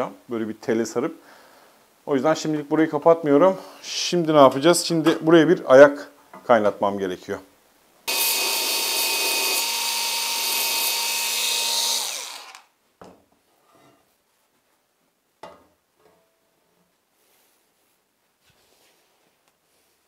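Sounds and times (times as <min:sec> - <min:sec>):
electric power tool running: 0:08.1 - 0:12.7.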